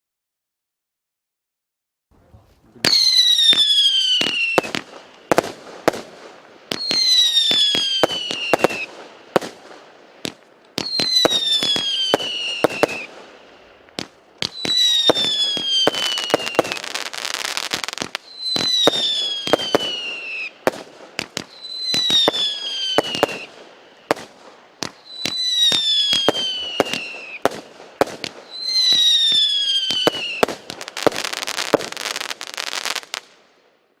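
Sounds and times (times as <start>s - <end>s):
firework bangs: 2.8s - 33.4s
firework whistle falling in pitch: 2.9s - 4.7s, 6.8s - 8.9s, 10.8s - 13.1s, 14.5s - 17.0s, 18.2s - 20.6s, 21.5s - 23.5s, 25.0s - 27.4s, 28.4s - 30.5s.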